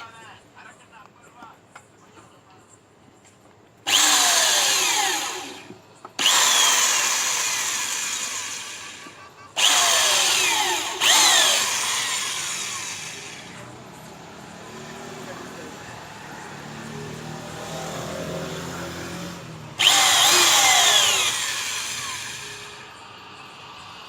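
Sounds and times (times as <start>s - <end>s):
electric drill whining: 3.9s - 13.7s, 19.0s - 24.0s.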